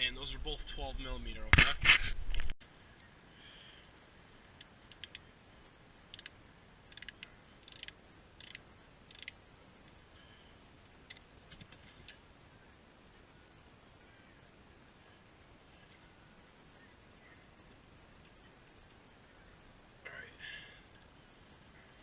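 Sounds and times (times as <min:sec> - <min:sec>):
ratchet wrench clicking: 0:06.9 - 0:09.4.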